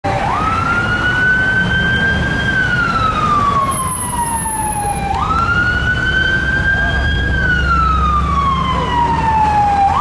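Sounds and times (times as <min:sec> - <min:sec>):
fire engine siren wailing: 0:00.0 - 0:10.0
passing vehicle rumble: 0:00.1 - 0:10.0.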